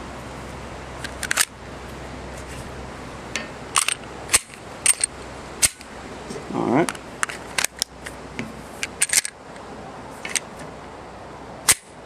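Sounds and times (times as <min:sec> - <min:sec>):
pistol metallic clicks: 0:03.8 - 0:05.9, 0:11.7 - 0:12.0.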